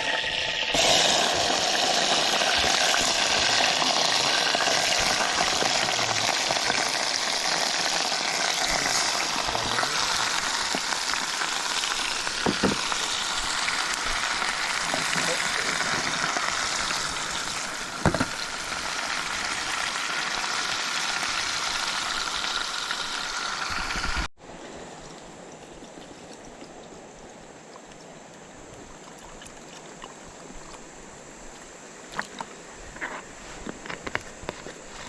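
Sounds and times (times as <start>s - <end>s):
steady hiss: 0.0s - 24.3s.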